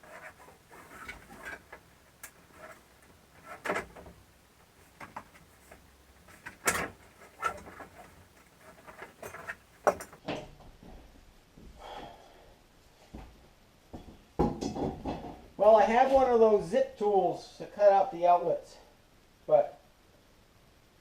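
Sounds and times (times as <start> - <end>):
objects knocking and clicking: 0.0 - 10.2.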